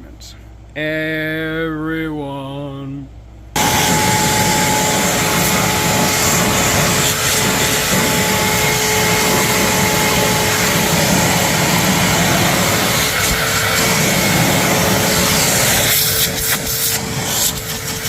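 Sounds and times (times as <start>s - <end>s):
vacuum cleaner running: 3.6s - 18.0s.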